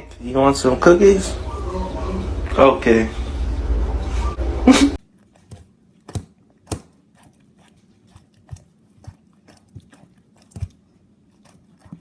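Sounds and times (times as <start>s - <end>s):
dog chewing crunchy treat: 5.2s - 12.0s.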